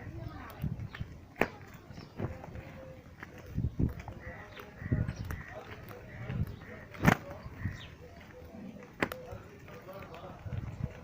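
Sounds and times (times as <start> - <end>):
goats shuffling steps: 0.3 - 11.0.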